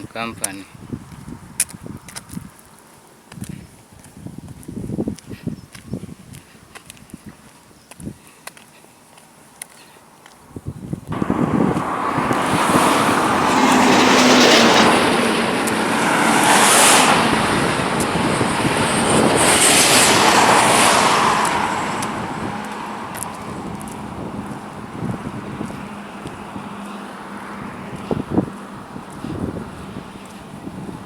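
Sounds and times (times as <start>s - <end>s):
motor vehicle passing by: 11.1s - 31.0s.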